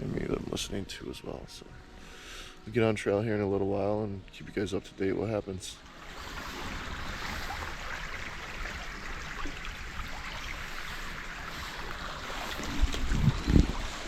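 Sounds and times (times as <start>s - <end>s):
stream flowing: 2.8s - 14.0s.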